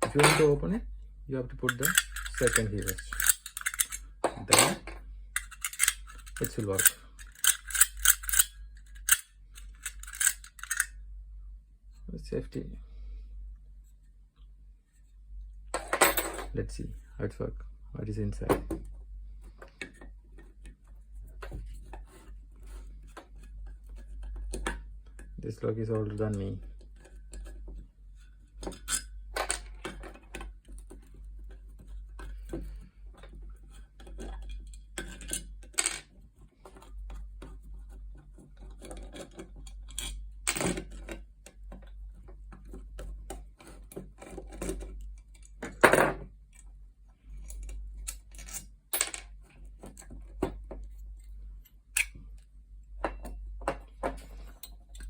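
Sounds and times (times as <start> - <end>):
steady low hum: 0.0 - 35.3
metallic lock clicks and knocks: 1.7 - 10.9.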